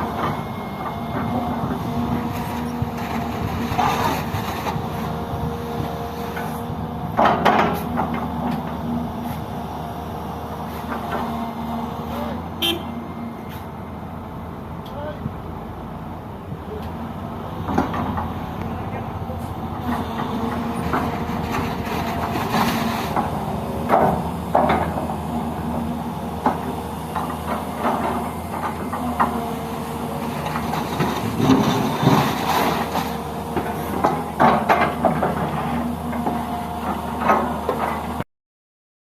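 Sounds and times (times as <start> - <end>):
heavy vehicle engine running: 0.0 - 38.2
voices: 14.8 - 15.4.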